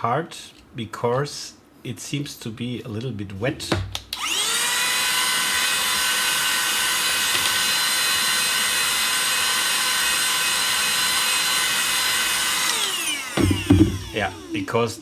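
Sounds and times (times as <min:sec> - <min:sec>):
mini vacuum cleaner whining: 0:04.2 - 0:15.0.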